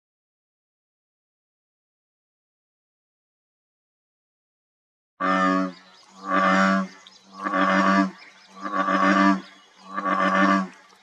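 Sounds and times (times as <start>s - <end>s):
frog calling: 5.2s - 10.8s.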